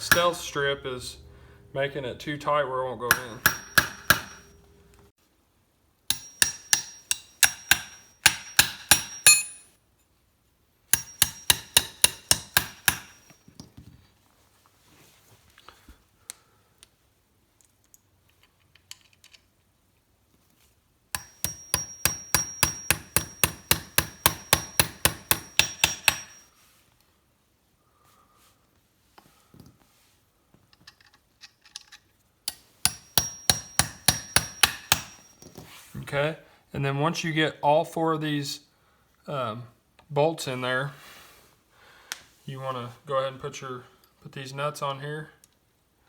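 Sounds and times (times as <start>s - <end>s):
hammer striking metal bolts: 0.0s - 0.6s, 3.1s - 4.7s, 6.1s - 9.7s, 10.9s - 13.4s, 21.2s - 26.4s, 32.5s - 35.6s.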